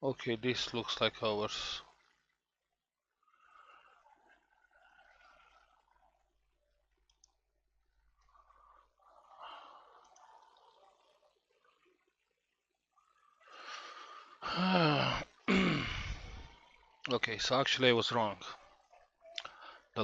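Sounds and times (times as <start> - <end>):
man exhaling breathily: 13.6 - 16.5.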